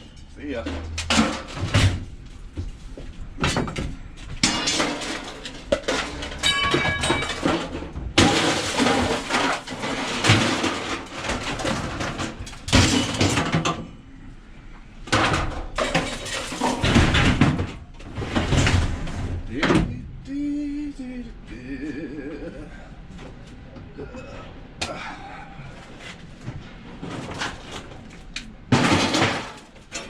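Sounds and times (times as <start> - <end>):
scrap metal clattering and crashing: 0.0 - 2.6, 3.2 - 14.1, 15.1 - 20.0, 25.9 - 30.0
metal piece ringing: 6.4 - 7.4.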